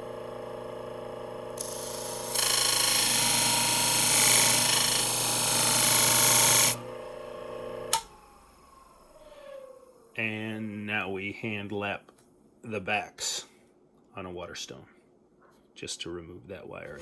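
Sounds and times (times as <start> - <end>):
sharpener motor hum: 0.0 - 9.6
blade grinding: 1.6 - 7.0.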